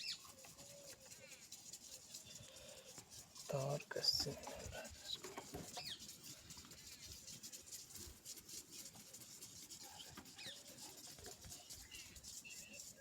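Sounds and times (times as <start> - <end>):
faint bird chirps: 0.0 - 1.4.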